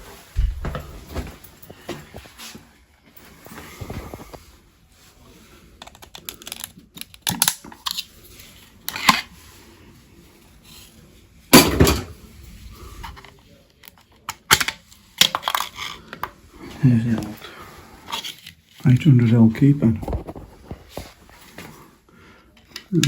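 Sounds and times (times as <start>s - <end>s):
hands handling equipment clicks: 5.8s - 8.1s.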